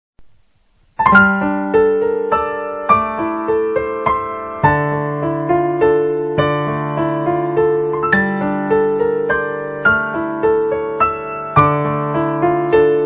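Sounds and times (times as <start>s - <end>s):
piano melody over held chords: 1.0s - 13.0s.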